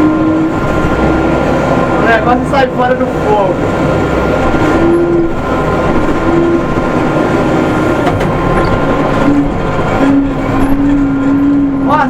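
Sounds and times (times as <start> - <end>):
diesel engine under load: 0.0 - 12.0
pitched whine: 0.0 - 12.0
rattling: 4.4 - 11.4.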